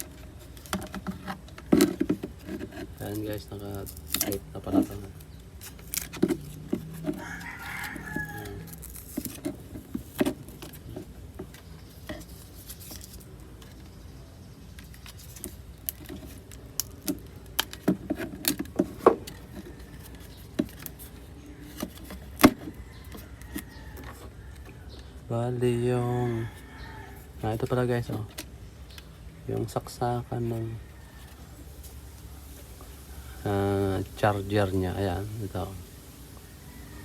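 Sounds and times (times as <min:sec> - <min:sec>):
rooster crowing: 0:06.9 - 0:09.0, 0:22.6 - 0:25.2, 0:25.8 - 0:27.6, 0:30.4 - 0:31.8, 0:36.3 - 0:37.0.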